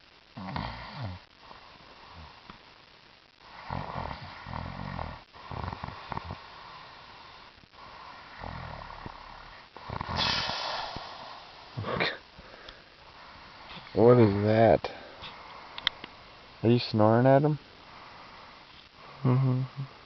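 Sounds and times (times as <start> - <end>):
man snoring: 0.4 - 1.3, 3.5 - 6.5, 7.9 - 12.2.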